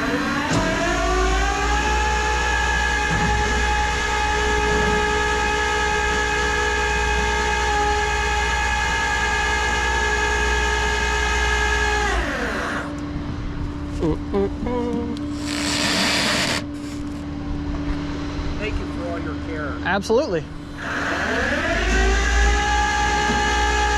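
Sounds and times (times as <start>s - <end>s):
hydraulic winch whine: 0.0s - 13.1s, 15.2s - 17.2s, 20.6s - 23.9s
low hum: 0.0s - 23.9s.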